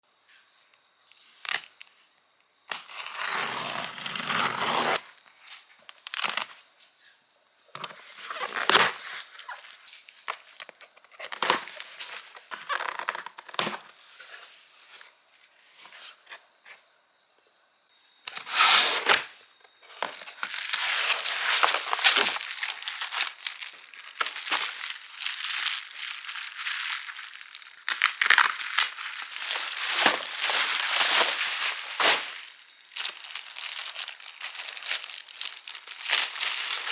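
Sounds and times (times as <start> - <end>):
packaging crinkling and tearing: 1.4 - 1.8, 2.7 - 5.2, 5.9 - 6.6, 7.8 - 14.9, 18.3 - 36.9.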